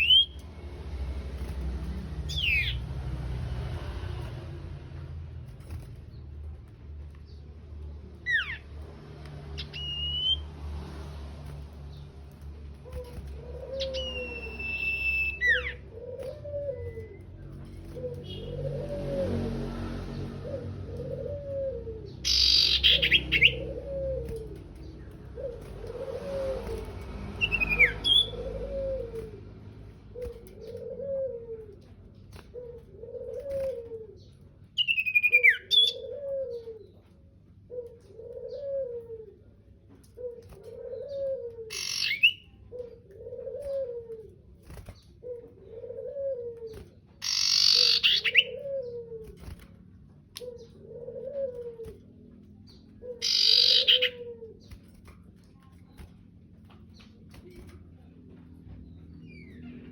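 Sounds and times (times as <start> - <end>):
bird chirps and squawks: 2.3 - 2.8, 13.0 - 15.9, 22.2 - 23.9, 41.2 - 42.9, 47.2 - 49.0, 52.7 - 54.7
bird cooing: 12.8 - 19.6, 20.4 - 29.4, 30.1 - 59.9.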